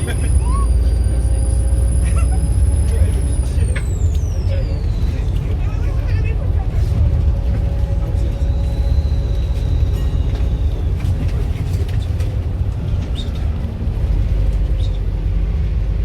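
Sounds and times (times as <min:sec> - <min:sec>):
diesel bus engine rumbling: 0:00.0 - 0:16.0
high turbo whistle: 0:07.6 - 0:11.3.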